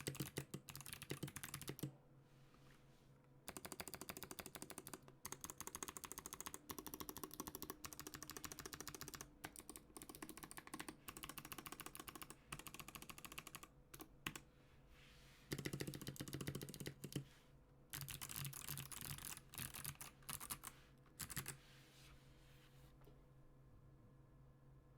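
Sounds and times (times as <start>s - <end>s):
typing on mechanical keyboard: 0.0s - 1.9s, 3.5s - 14.4s, 15.5s - 17.2s, 17.9s - 21.6s.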